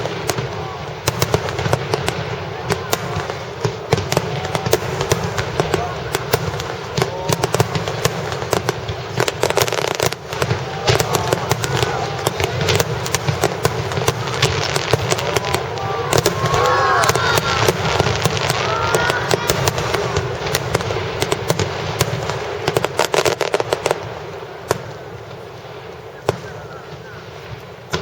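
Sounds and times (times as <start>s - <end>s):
onlookers' voices: 0.0s - 27.1s
fireworks cracking and banging: 0.0s - 28.0s.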